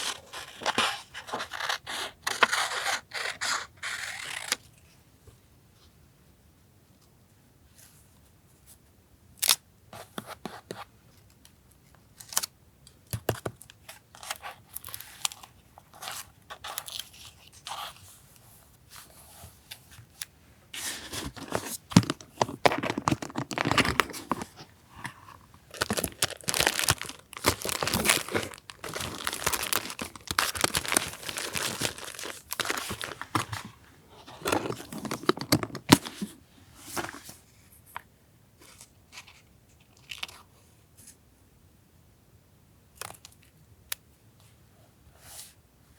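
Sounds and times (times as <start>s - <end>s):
paper crinkling and tearing: 20.9s - 33.7s
paper rustling and tapping: 21.2s - 33.8s.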